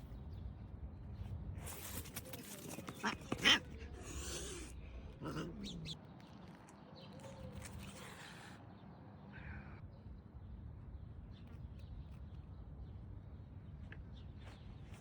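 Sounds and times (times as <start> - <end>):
cats fighting and yowling: 1.7 - 6.0.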